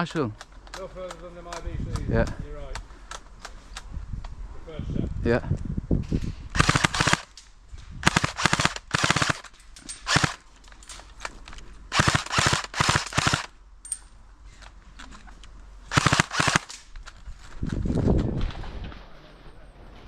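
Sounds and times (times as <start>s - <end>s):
airsoft guns firing bursts: 6.6s - 7.3s, 8.0s - 9.5s, 10.1s - 10.4s, 11.9s - 13.5s, 15.9s - 16.8s.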